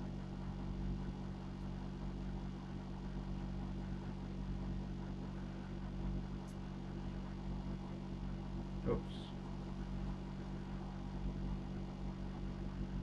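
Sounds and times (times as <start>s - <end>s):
low mechanical hum: 0.0s - 13.0s.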